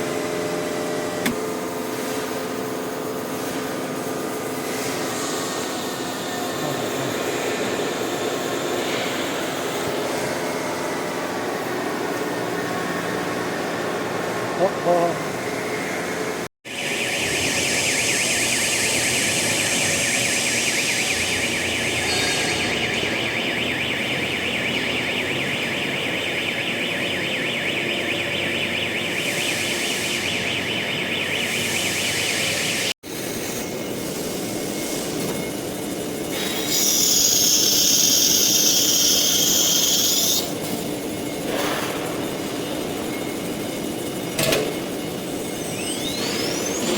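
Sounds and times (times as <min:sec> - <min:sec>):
high-pitched squeal: 0:17.4 - 0:24.4, 0:36.3 - 0:40.6, 0:45.4 - 0:46.9
router spindle whining: 0:36.5 - 0:40.5.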